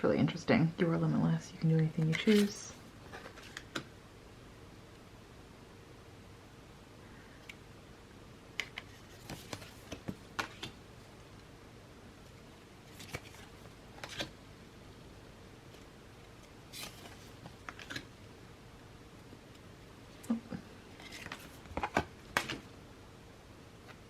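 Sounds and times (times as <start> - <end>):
cards flicking and tapping: 21.1 - 22.7.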